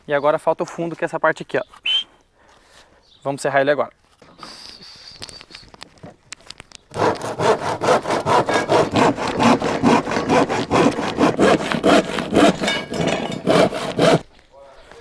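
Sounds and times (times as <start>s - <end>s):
handsaw cutting through board: 6.9s - 14.3s.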